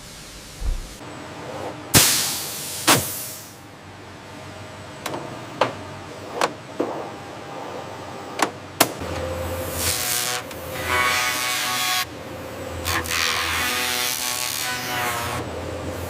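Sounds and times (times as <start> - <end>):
low factory background noise: 0.0 - 16.0
mechanical clanks and knocks: 0.6 - 1.0.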